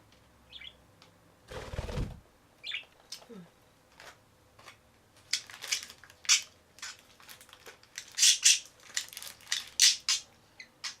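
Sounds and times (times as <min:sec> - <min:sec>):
budgie crunching and pecking food: 0:04.0 - 0:10.3.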